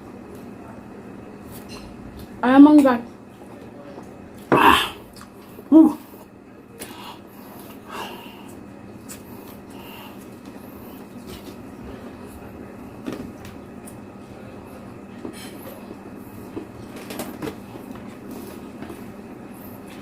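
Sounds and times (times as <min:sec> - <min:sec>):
chewing clicks and smacks: 0:08.5 - 0:09.6.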